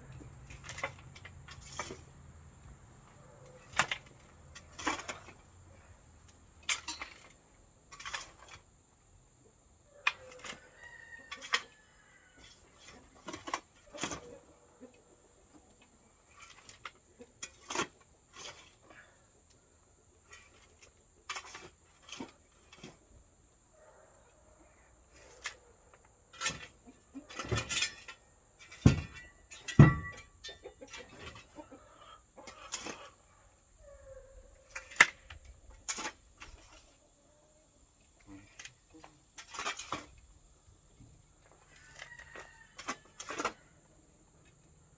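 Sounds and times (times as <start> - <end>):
knocks and scrapes: 0.0 - 8.8, 12.4 - 14.5, 15.5 - 19.2, 20.2 - 23.2, 25.1 - 31.8, 32.4 - 33.4, 34.6 - 37.1, 38.0 - 43.8
chickens clucking: 12.8 - 16.2, 30.4 - 35.2.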